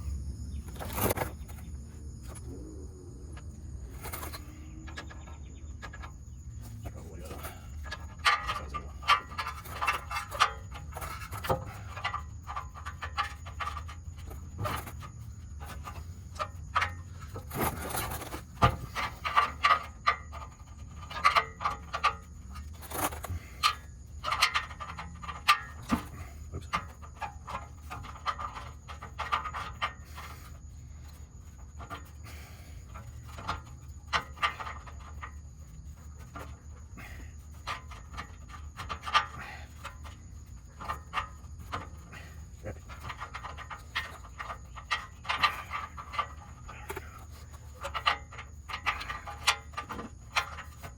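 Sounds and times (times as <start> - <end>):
hand tools clicking and knocking: 3.4 - 50.9
metal parts being handled: 3.4 - 50.9.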